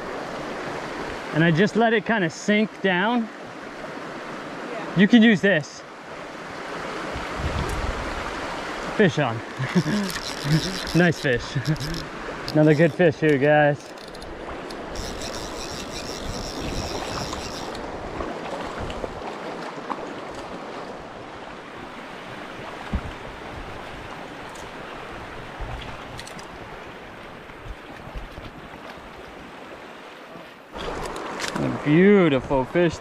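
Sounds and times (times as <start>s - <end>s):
creek water flowing: 0.0s - 33.0s
thin high buzz: 9.6s - 13.2s, 13.8s - 17.9s.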